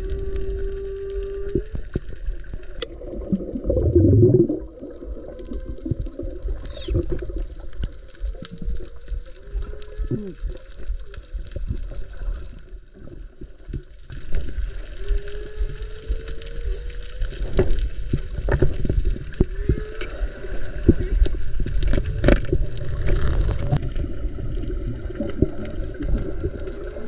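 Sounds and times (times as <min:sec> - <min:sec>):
whale song moaning: 0:00.0 - 0:02.8, 0:03.4 - 0:07.4, 0:08.3 - 0:10.9, 0:14.5 - 0:18.4, 0:19.3 - 0:21.6
crackling clicks: 0:00.0 - 0:23.9, 0:25.2 - 0:27.0
water movement rumble: 0:00.0 - 0:27.0.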